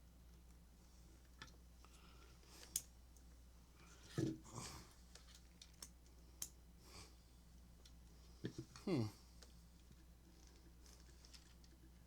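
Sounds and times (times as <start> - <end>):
small clicks and taps of parts: 1.2 - 2.0, 2.6 - 3.4, 5.1 - 6.6, 7.8 - 8.8.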